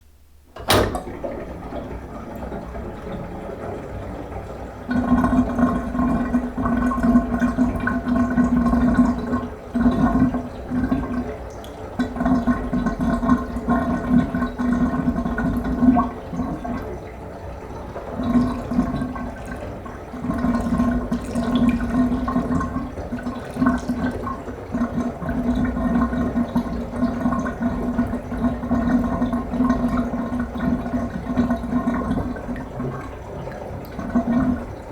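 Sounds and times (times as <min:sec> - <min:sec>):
drain gurgling: 0:00.6 - 0:34.9
water running down a drain: 0:00.6 - 0:34.9.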